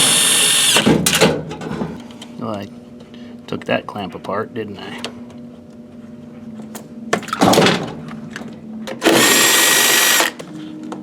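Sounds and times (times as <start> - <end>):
power drill motor whine: 0.0 - 0.9, 9.0 - 10.4.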